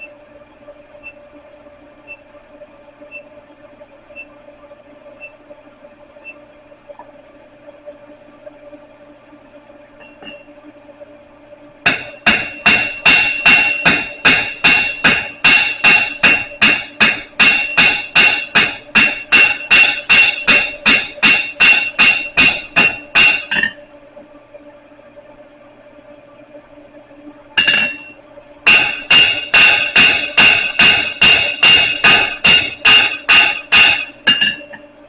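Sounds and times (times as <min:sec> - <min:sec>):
hammer striking steel on anvil: 0:11.9 - 0:23.8, 0:27.6 - 0:34.8.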